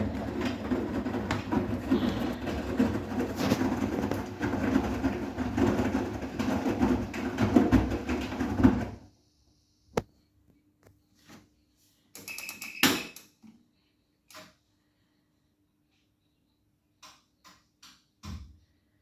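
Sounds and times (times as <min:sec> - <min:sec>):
washing machine drum churning: 0:00.0 - 0:09.1.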